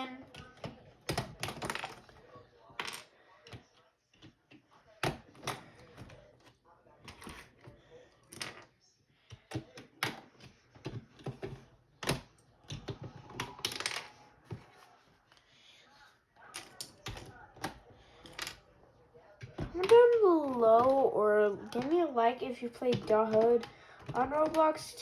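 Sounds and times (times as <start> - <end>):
keyboard plastic clicks and knocks: 0.3 - 2.2, 9.3 - 14.7, 16.6 - 18.7, 22.8 - 24.9.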